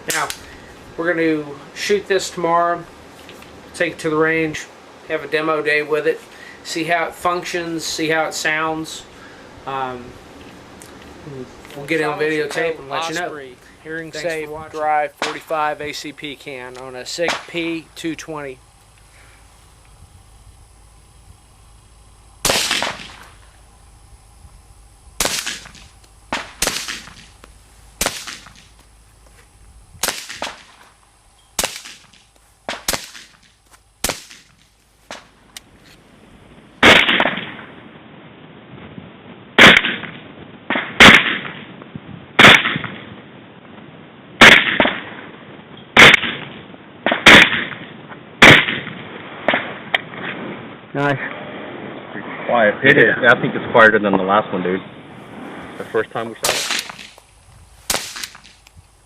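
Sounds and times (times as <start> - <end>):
suppressed pistol shots: 22.4 - 23.4, 25.2 - 27.4, 28.0 - 28.7, 30.0 - 30.8, 31.6 - 35.3, 36.8 - 37.6, 42.4 - 43.0, 44.4 - 45.1, 46.0 - 46.4, 47.1 - 47.8, 48.4 - 50.1, 56.4 - 57.2, 57.9 - 58.6.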